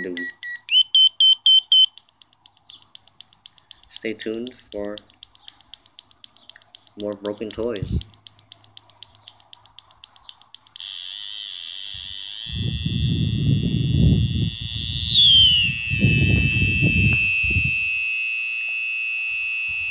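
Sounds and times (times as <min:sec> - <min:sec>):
shrill pulsing square-wave tone: 0:10.8 - 0:19.9.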